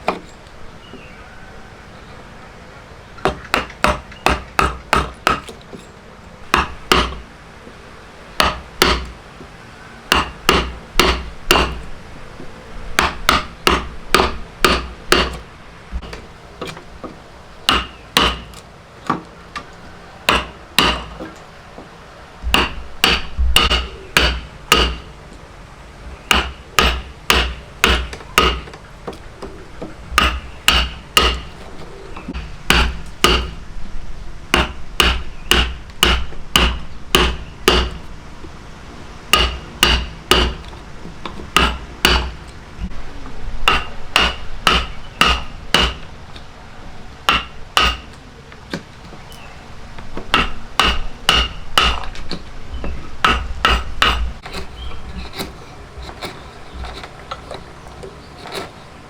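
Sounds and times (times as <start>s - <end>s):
hammer knocking on wood: 3.2s - 5.6s, 6.5s - 7.2s, 8.4s - 9.1s, 10.1s - 11.8s, 13.0s - 15.4s, 16.0s - 19.2s, 20.3s - 21.4s, 22.4s - 25.1s, 26.3s - 29.2s, 29.8s - 31.5s, 32.3s - 33.6s, 34.6s - 38.0s, 39.4s - 40.7s, 41.4s - 42.4s, 43.7s - 46.0s, 47.3s - 48.1s, 50.2s - 52.2s, 53.2s - 58.8s.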